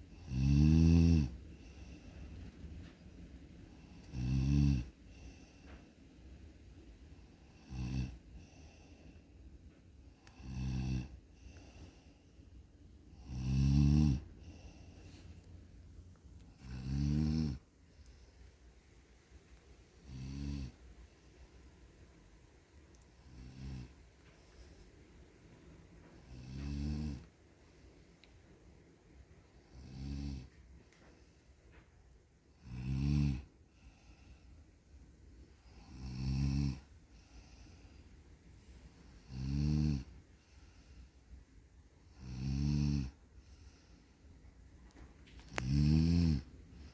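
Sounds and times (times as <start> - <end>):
person snoring: 0.1 - 1.4, 3.8 - 4.9, 10.2 - 11.2, 13.1 - 14.8, 16.5 - 17.6, 20.0 - 20.8, 23.2 - 23.9, 26.2 - 27.3, 29.7 - 30.5, 32.5 - 33.5, 35.7 - 36.9, 39.2 - 40.1, 42.1 - 43.2, 45.5 - 46.5.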